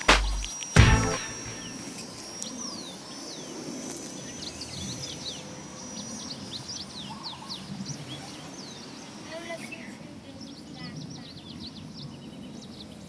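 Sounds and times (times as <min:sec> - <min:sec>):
thin high-pitched tone: 0:00.0 - 0:02.7
outdoor background noise: 0:00.0 - 0:13.0.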